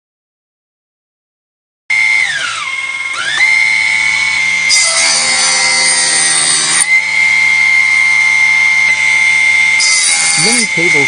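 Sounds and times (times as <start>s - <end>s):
table saw motor whine: 1.9s - 11.0s
saw blade cutting hiss and buzz: 4.7s - 6.9s, 9.7s - 11.0s.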